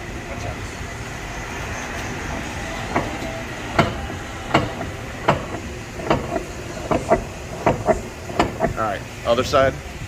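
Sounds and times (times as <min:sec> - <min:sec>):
car suspension clunking: 0:01.9 - 0:09.1.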